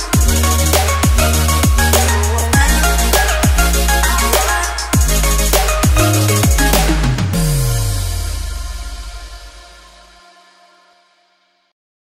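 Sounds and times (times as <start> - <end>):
heavy bass drum hits: 0.0 - 3.9, 4.9 - 9.6
deep bass slide: 0.0 - 10.1
electronic music: 0.0 - 11.0.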